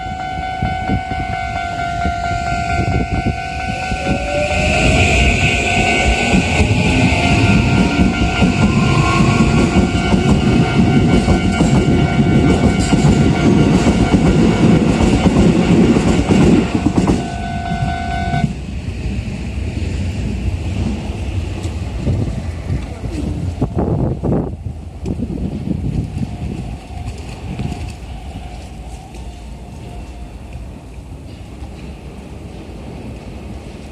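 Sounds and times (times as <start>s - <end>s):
electric train motor whine: 0.0s - 18.6s
train wheels rumbling on rails: 0.0s - 33.9s.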